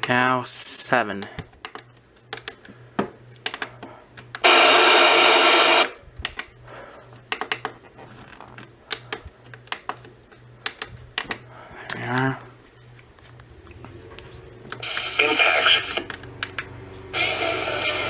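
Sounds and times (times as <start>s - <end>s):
radio speaker alert burst: 4.4s - 6.0s, 14.8s - 16.1s.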